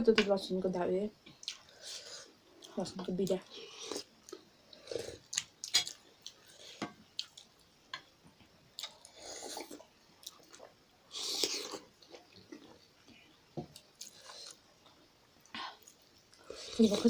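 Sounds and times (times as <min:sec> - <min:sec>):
chewing and wet mouth sounds: 0:01.3 - 0:01.9, 0:02.6 - 0:07.7, 0:08.8 - 0:17.0.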